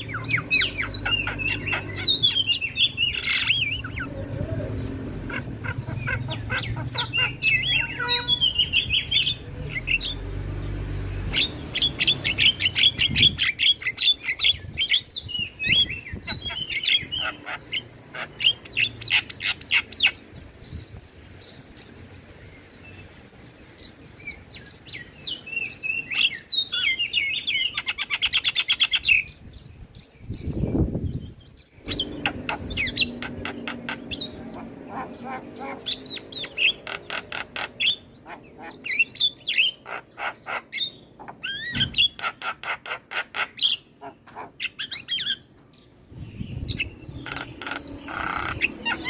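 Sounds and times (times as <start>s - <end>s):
bird harsh chattering: 0.0s - 10.2s, 11.3s - 20.2s, 31.8s - 45.5s, 46.4s - 49.0s.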